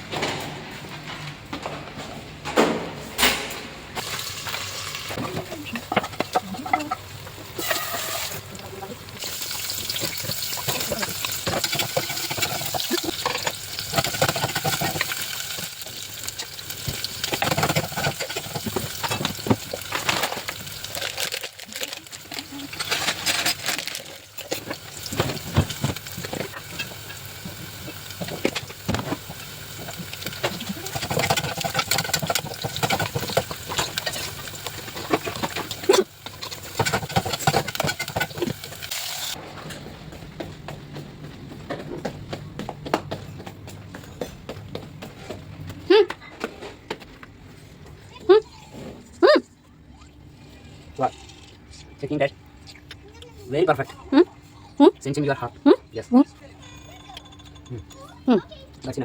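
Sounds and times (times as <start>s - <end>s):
food sizzling in a pan: 6.0s - 39.4s
utensil scraping a pan: 26.2s - 38.9s.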